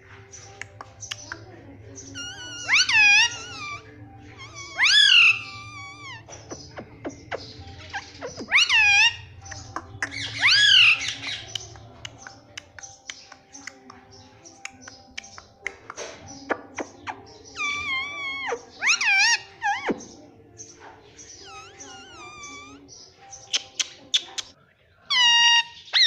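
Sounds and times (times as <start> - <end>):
parrot chirps and clicks: 0.3 - 1.5, 4.4 - 20.1, 21.4 - 26.0
parrot calling: 1.9 - 12.2, 16.5 - 26.0.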